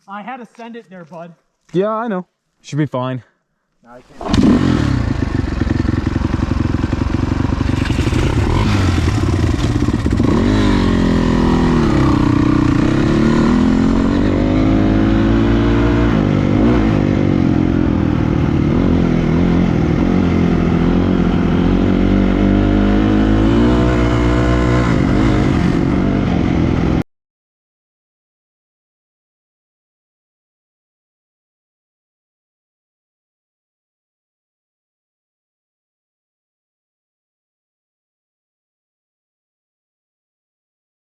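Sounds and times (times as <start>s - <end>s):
quad engine revving: 4.2s - 27.0s.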